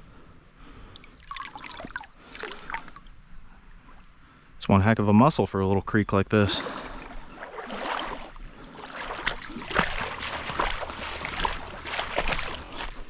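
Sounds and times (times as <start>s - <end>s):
running creek water: 0.0s - 13.0s
splashing steps in water: 6.4s - 13.0s.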